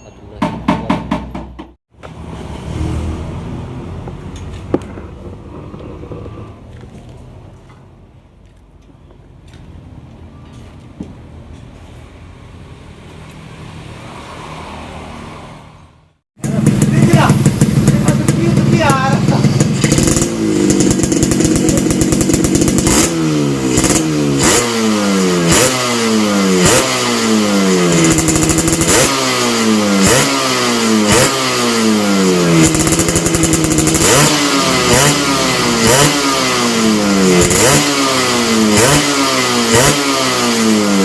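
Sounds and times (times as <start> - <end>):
motorcycle engine revving: 16.4 - 41.0.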